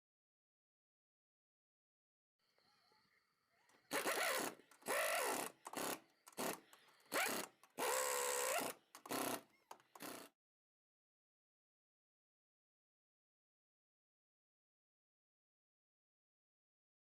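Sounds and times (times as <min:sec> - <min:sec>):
power tool tightening lug nuts: 0:03.9 - 0:10.3.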